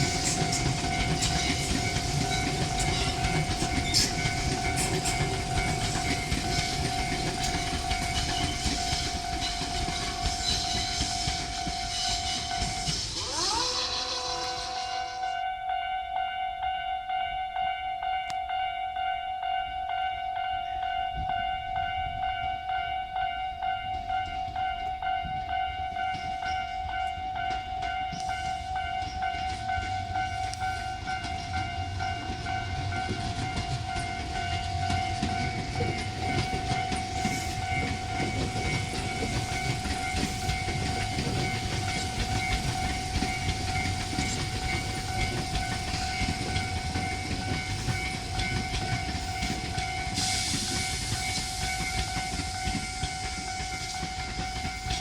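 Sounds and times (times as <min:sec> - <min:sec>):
hiss: 0:00.0 - 0:09.1, 0:10.0 - 0:15.2, 0:37.2 - 0:55.0
train wheel clatter: 0:00.0 - 0:15.3, 0:23.2 - 0:55.0
electric train rumbling over crossing: 0:00.0 - 0:55.0
level-crossing warning bell ringing: 0:00.0 - 0:55.0.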